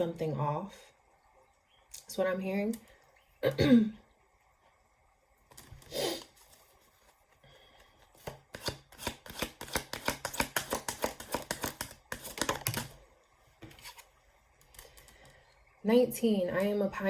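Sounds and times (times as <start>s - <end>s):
cards being shuffled: 8.2s - 12.9s.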